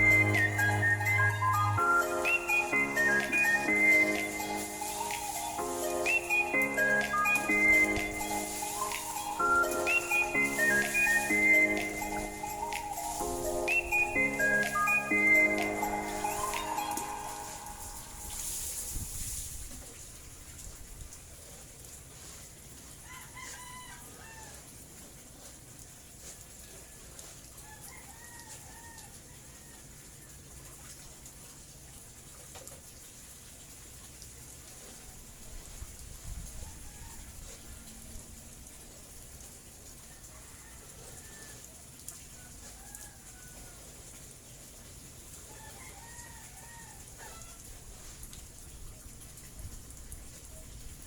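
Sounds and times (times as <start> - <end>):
steady hiss: 3.2 - 19.9
rooster crowing: 23.0 - 24.6, 27.6 - 30.0, 40.1 - 41.7, 42.4 - 44.0, 45.5 - 47.6.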